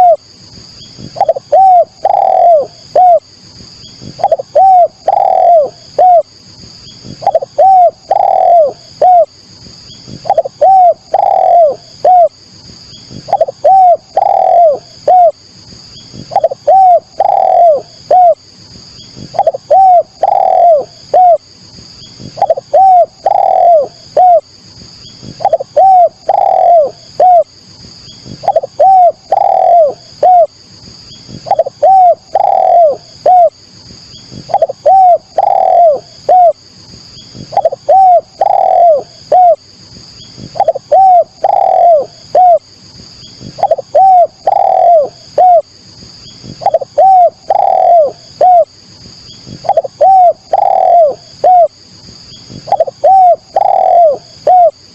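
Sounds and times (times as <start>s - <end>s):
dove cooing: 0.0s - 0.2s, 1.0s - 3.3s, 4.0s - 6.3s, 7.0s - 9.4s, 10.1s - 12.4s, 13.1s - 15.4s, 16.1s - 18.4s, 19.2s - 21.4s, 22.2s - 24.5s, 25.2s - 27.5s, 28.2s - 30.6s, 31.3s - 33.6s, 34.3s - 36.6s, 37.4s - 39.6s, 40.4s - 42.6s, 43.4s - 45.7s, 46.5s - 48.7s, 49.5s - 51.8s, 52.5s - 54.8s.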